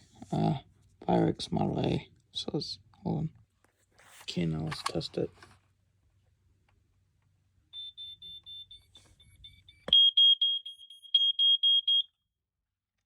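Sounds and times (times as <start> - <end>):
smoke alarm rapid beeps: 7.8 - 12.2.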